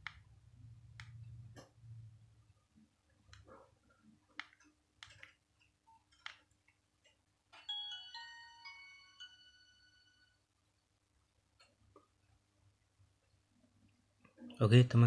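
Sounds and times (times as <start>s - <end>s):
phone beeping melody: 7.6s - 10.4s.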